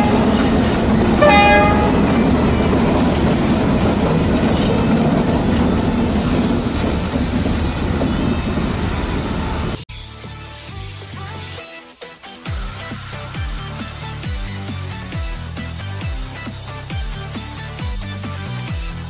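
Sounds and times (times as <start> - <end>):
toy train horn toot: 0.0 - 3.4
toy train rumbling on track: 0.0 - 9.8.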